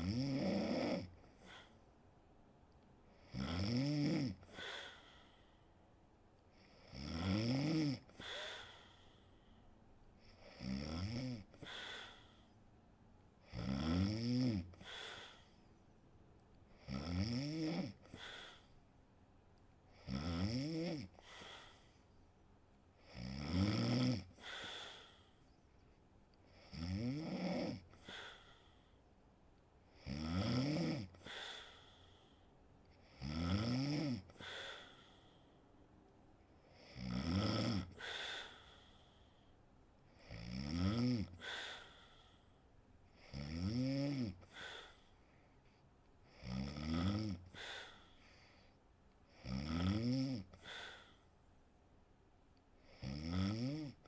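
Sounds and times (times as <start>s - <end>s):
woman snoring: 0.0s - 1.6s, 3.2s - 5.0s, 6.6s - 8.8s, 10.2s - 12.3s, 13.5s - 15.4s, 16.8s - 18.6s, 20.0s - 21.8s, 23.0s - 25.1s, 26.5s - 28.5s, 30.0s - 31.9s, 33.0s - 35.0s, 36.7s - 38.7s, 40.2s - 42.0s, 43.2s - 45.0s, 46.3s - 48.1s, 49.3s - 51.1s, 52.8s - 54.0s.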